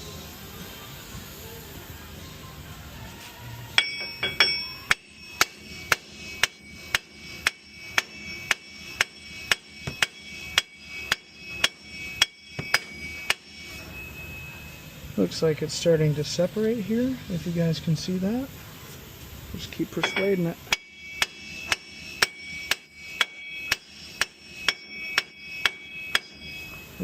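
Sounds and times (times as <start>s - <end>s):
hammer striking metal: 3.8s - 14.8s, 20.0s - 27.0s.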